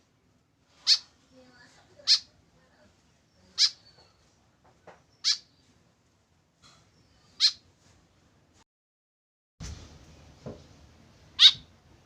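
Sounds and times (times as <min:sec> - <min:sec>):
bird giving sharp high calls: 0:03.6 - 0:03.8, 0:05.2 - 0:05.5, 0:07.4 - 0:07.6, 0:11.4 - 0:11.7.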